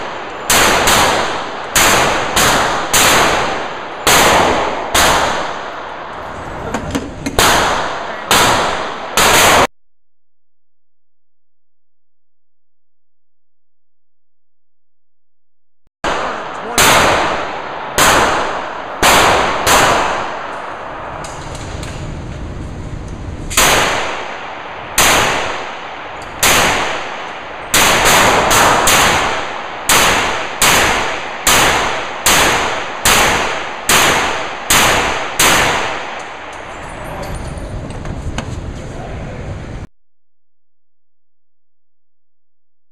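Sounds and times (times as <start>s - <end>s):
pistol shots: 0.0s - 6.2s, 7.3s - 9.7s, 16.0s - 21.9s, 23.5s - 36.6s.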